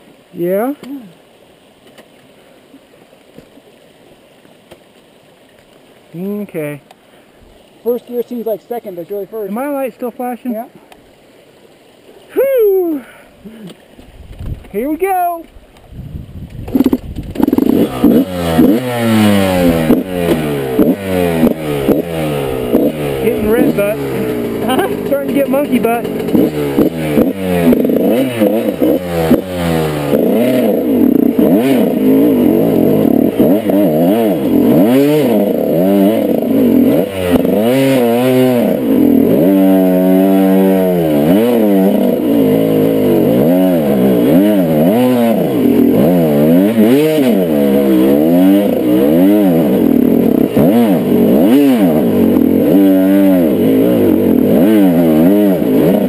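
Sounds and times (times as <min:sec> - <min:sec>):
dirt bike engine revving: 0:16.6 - 0:56.0.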